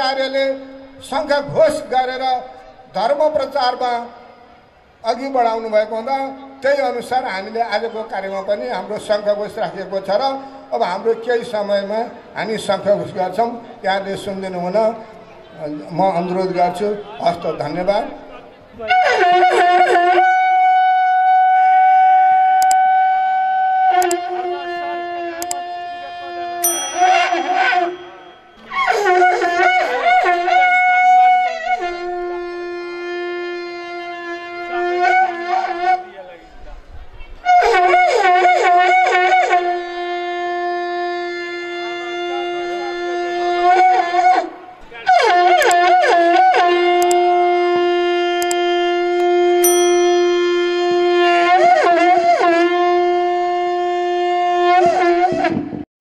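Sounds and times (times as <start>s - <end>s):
conch shells blown: 18.9s - 36.1s, 37.5s - 55.8s.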